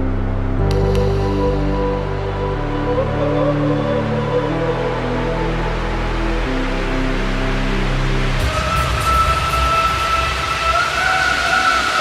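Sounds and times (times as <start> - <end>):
background music with low notes: 0.0 - 12.0
steady high note: 7.7 - 12.0.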